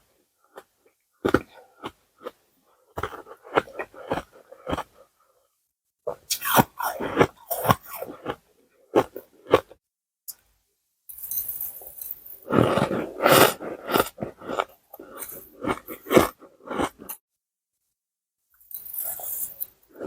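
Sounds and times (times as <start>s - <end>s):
ice crunching between teeth: 3.0s - 5.0s, 6.3s - 8.4s, 11.8s - 17.2s.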